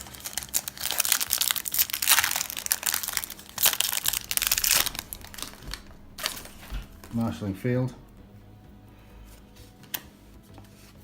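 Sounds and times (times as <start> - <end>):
foil wrapper crinkling: 0.0 - 7.3.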